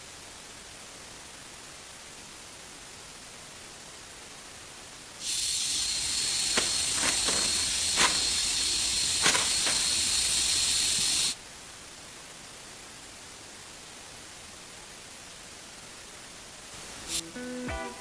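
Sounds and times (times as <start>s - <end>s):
food sizzling in hot oil: 5.2s - 11.4s.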